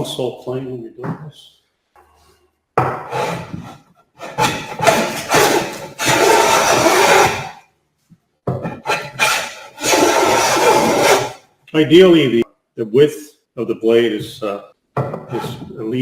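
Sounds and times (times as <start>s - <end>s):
hand plane shaving wood: 3.1s - 7.6s, 8.8s - 11.4s.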